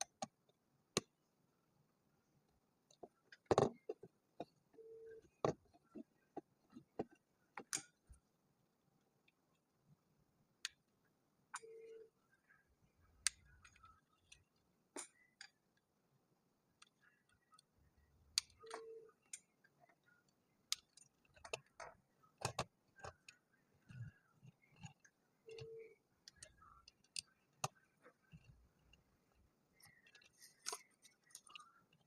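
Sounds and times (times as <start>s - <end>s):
plastic building bricks clicking: 20.6s - 32.0s.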